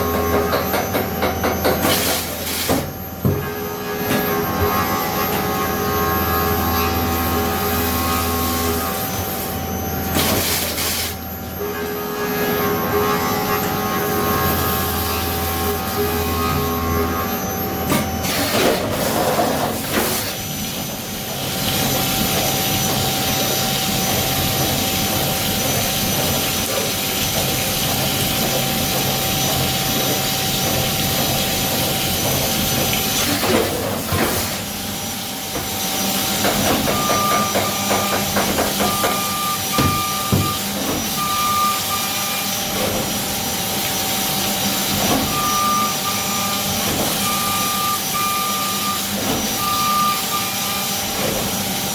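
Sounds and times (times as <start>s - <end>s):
milling machine humming: 0.0s - 51.9s
machine knocks: 35.5s - 41.2s.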